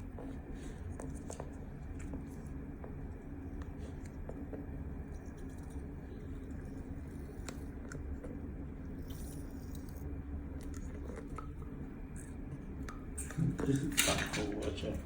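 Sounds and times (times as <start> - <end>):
steady low hum: 0.0 - 15.0
objects clicking and rustling: 13.2 - 15.0.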